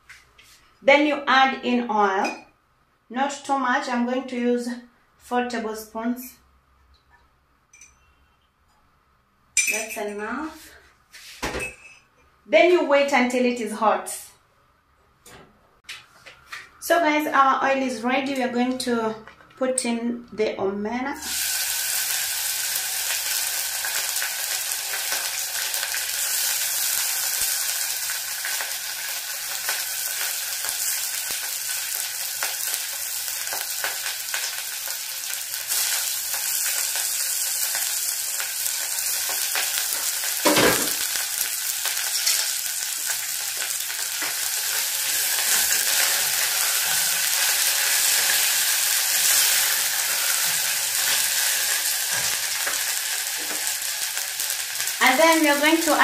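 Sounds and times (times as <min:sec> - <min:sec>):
fish sizzling in hot oil: 0:21.2 - 0:56.0.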